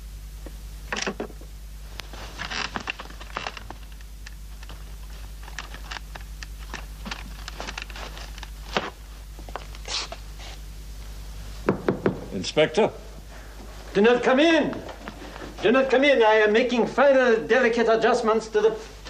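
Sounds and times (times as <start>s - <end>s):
low electrical hum: 0.0s - 19.0s
small hard parts clicking and rattling: 2.4s - 4.8s, 5.4s - 8.5s.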